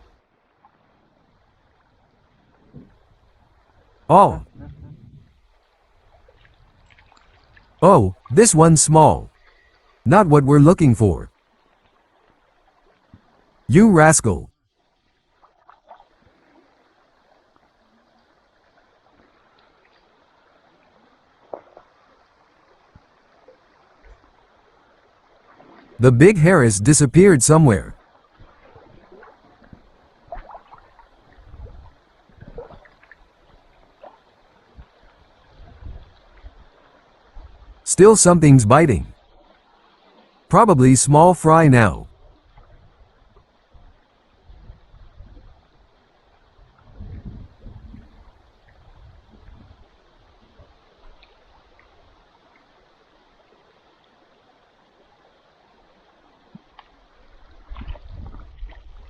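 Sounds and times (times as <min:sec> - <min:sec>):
river water gurgling and lapping: 0:05.8 - 0:07.8.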